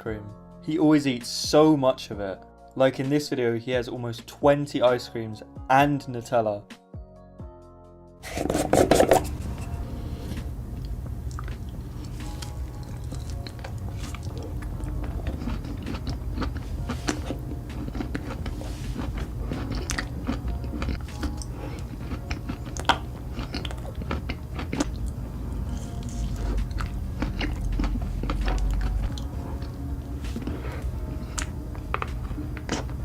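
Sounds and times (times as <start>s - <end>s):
steady low hum: 8.3s - 33.0s
person chewing ice cream: 10.7s - 33.0s
crunching: 12.4s - 25.1s.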